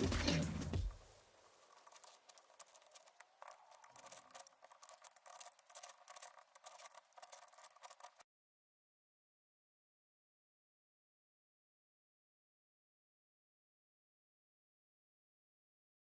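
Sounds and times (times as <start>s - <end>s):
clicks and scratching of metal hand work: 1.5s - 8.2s.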